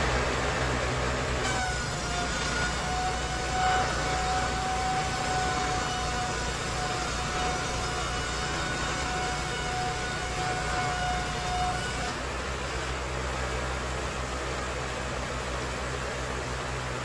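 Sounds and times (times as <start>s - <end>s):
engine running: 0.0s - 17.0s.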